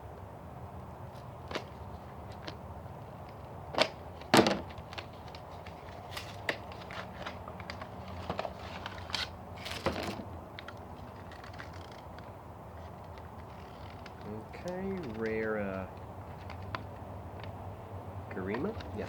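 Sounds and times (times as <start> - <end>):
packaging crinkling and clicking: 3.3 - 17.6
sharp plastic snaps: 13.0 - 17.6.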